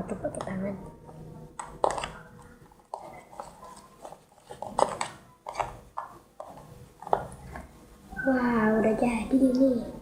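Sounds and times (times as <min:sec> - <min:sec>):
slime squelching: 0:00.0 - 0:07.8.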